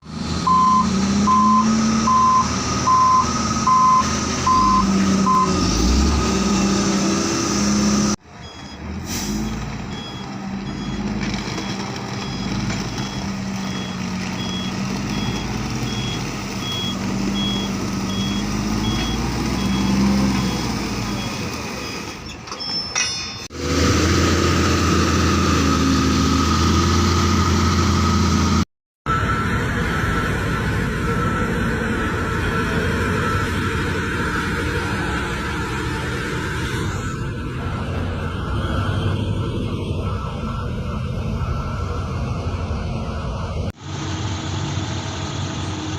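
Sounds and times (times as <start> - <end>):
diesel machine engines: 0.0 - 45.9
high-pitched backup beeper: 0.4 - 6.8, 8.4 - 22.9, 29.1 - 43.7
reversing alarm beeping: 0.4 - 6.9, 8.4 - 23.2, 29.1 - 43.7.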